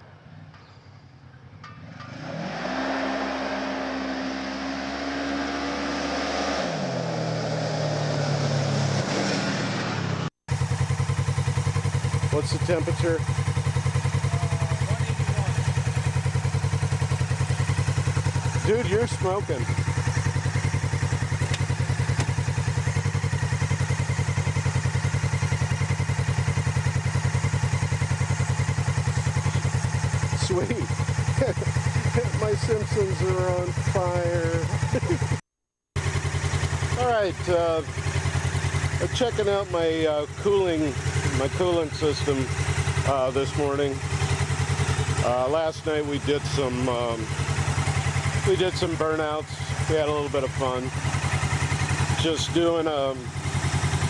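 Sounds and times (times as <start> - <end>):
engine revving high: 1.8 - 10.3
engine idling with rhythmic chug: 10.5 - 35.4, 36.0 - 54.0.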